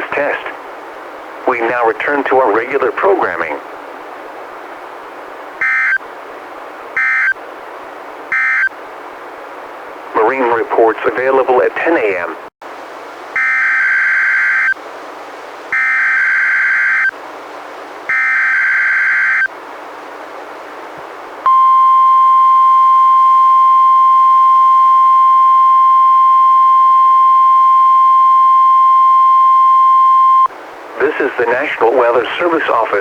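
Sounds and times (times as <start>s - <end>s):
steady warning alarm tone: 5.6s - 6.0s, 7.0s - 7.4s, 8.3s - 8.7s, 13.4s - 14.8s, 15.7s - 17.1s, 18.1s - 19.5s, 21.5s - 30.5s.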